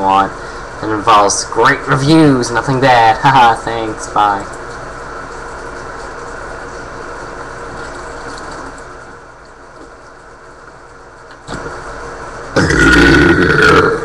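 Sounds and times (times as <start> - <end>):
loud burp: 12.6 - 14.0.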